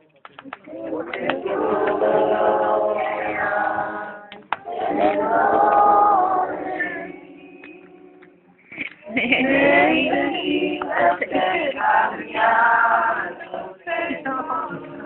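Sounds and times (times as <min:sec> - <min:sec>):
group singing worship chorus: 0:00.6 - 0:15.0.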